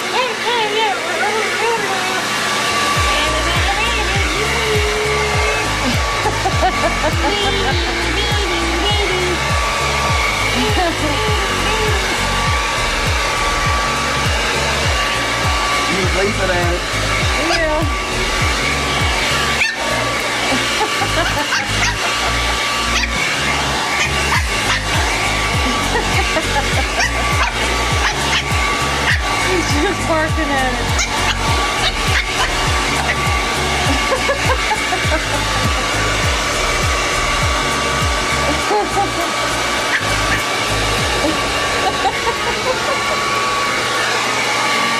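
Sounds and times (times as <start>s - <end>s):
blow dryer whooshing: 0.0s - 44.9s
puppy yipping: 19.6s - 19.9s, 21.2s - 25.0s, 26.8s - 29.4s, 31.0s - 33.3s, 39.8s - 40.5s.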